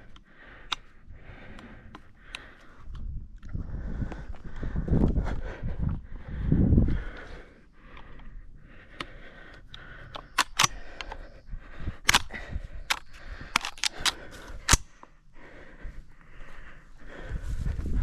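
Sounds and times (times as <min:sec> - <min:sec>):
sharp clicks and snaps: 0:00.0 - 0:03.6, 0:07.1 - 0:15.2.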